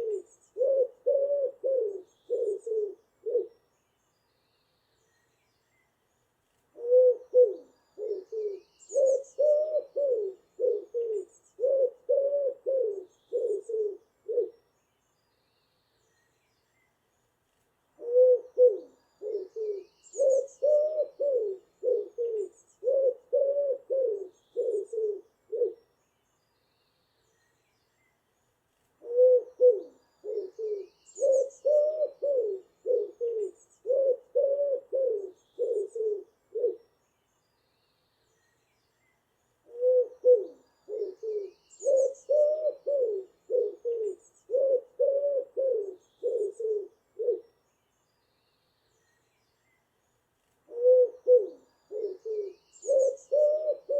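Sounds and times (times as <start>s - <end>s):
pigeon cooing: 0.0s - 3.5s, 6.8s - 14.6s, 18.0s - 25.8s, 29.0s - 36.8s, 39.7s - 47.4s, 50.7s - 53.9s
small bird chirping: 18.4s - 23.2s, 24.0s - 34.3s, 35.1s - 53.9s.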